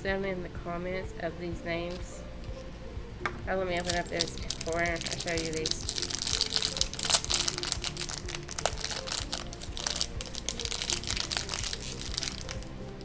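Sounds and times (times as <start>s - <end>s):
quiet background music: 0.0s - 13.0s
plastic packaging crinkling: 3.8s - 13.0s.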